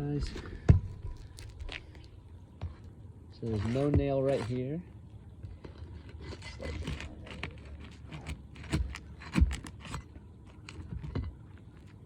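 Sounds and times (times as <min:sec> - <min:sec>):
tools scraping roof shingles: 0:03.4 - 0:04.7, 0:05.6 - 0:12.0.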